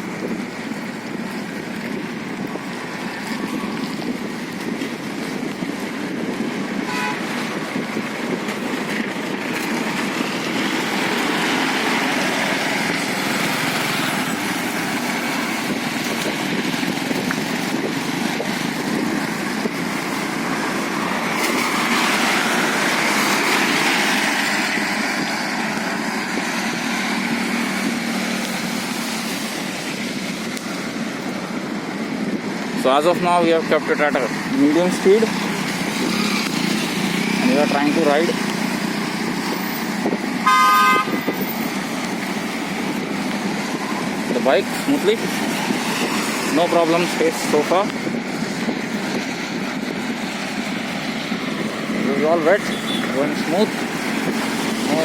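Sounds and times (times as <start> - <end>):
traffic on a wet road: 0.0 - 55.0
car horn toot: 6.9 - 7.2, 40.4 - 41.2, 52.7 - 53.1.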